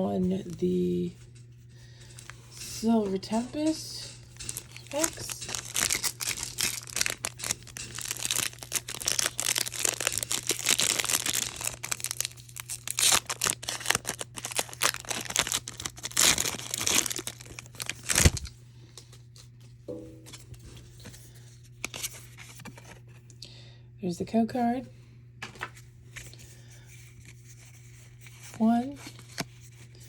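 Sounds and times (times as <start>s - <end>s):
foil wrapper torn and crinkled: 4.4s - 18.5s.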